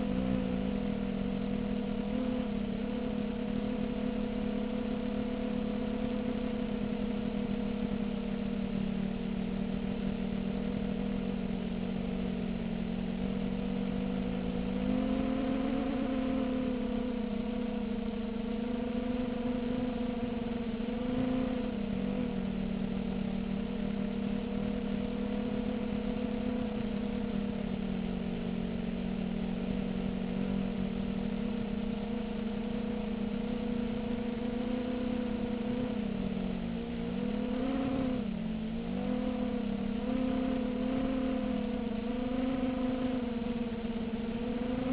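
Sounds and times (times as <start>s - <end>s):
quadcopter motors whirring: 13.4s - 44.9s.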